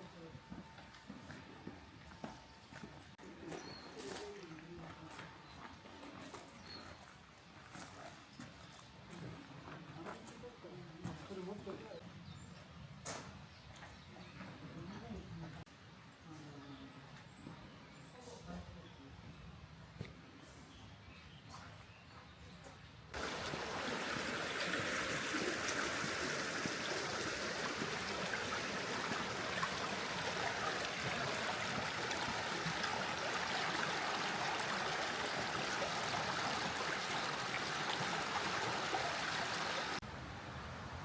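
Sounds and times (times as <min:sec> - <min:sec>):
stream water flowing: 0:23.2 - 0:41.0.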